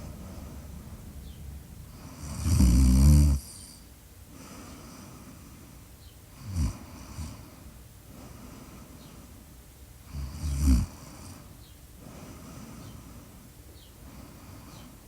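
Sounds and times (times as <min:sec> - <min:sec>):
person snoring: 0:02.0 - 0:03.8
person breathing: 0:03.4 - 0:05.9, 0:06.8 - 0:09.4, 0:11.0 - 0:15.0.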